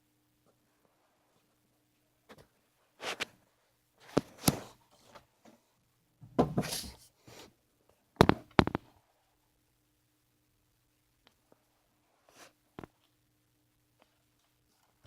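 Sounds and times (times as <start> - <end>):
vinyl rustling: 2.2 - 5.6
clunks and knocks: 6.2 - 6.7.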